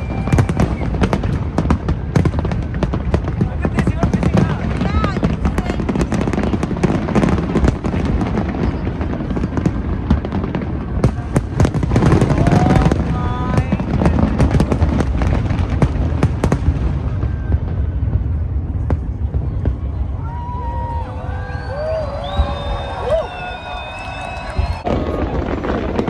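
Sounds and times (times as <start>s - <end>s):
crowd shouting: 0.0s - 1.1s, 11.8s - 14.3s, 19.3s - 26.0s
crowd voices: 0.0s - 26.0s
fireworks bangs and crackles: 0.0s - 26.0s.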